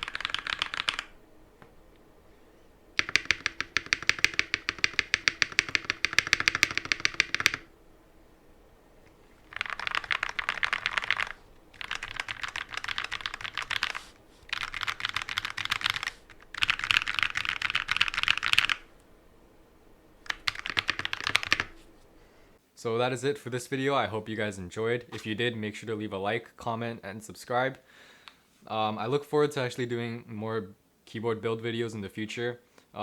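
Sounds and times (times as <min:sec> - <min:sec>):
mechanical keyboard typing: 0:00.0 - 0:01.1, 0:03.0 - 0:07.7, 0:09.5 - 0:18.9, 0:20.3 - 0:21.7.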